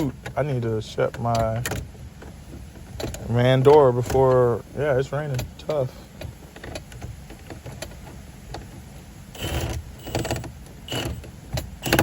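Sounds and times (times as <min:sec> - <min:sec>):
metal tools clicking and rattling: 0:09.4 - 0:12.0.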